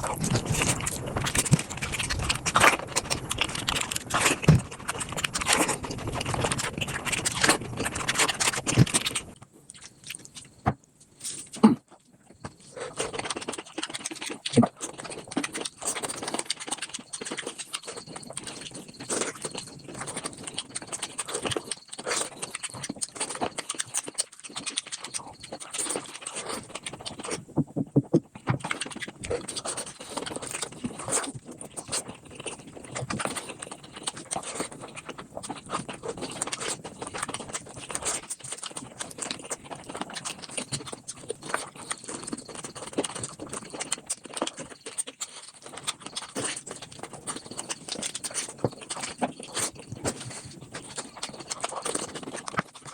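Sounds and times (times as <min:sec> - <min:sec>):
crunching and chewing bamboo: 0:00.0 - 0:52.9.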